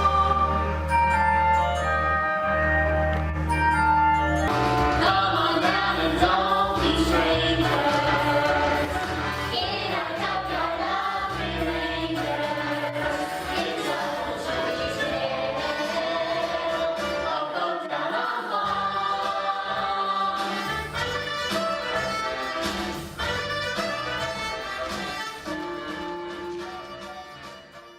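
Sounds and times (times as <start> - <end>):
group singing in chorus: 0.0 - 1.1, 4.6 - 21.1
instrumental backing track: 0.0 - 17.4, 18.6 - 27.9.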